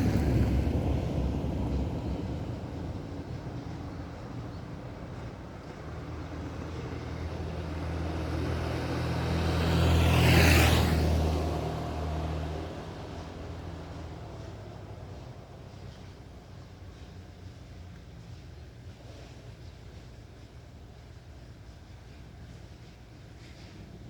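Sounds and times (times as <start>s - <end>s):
vehicle passing by: 0.0s - 16.7s.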